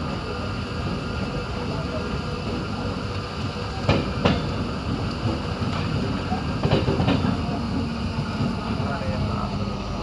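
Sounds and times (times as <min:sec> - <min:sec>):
train rumbling on rails: 0:00.0 - 0:10.0
wheels clacking over rail joint: 0:03.8 - 0:08.9.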